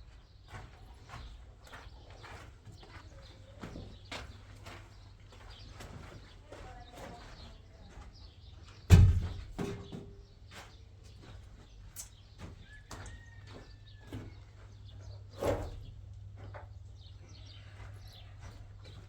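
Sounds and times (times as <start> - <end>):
loud thump: 8.9 - 9.5.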